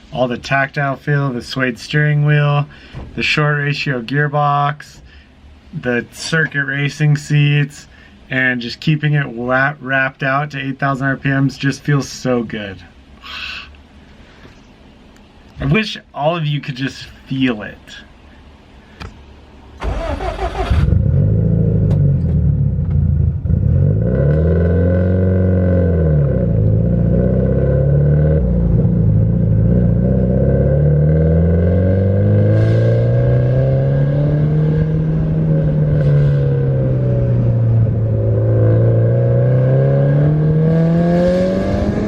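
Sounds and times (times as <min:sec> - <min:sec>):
car engine revving: 0:19.8 - 0:42.0.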